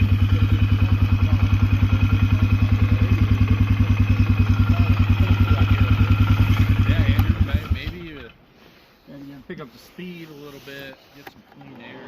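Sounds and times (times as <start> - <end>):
atv engine idling: 0.0 - 8.4.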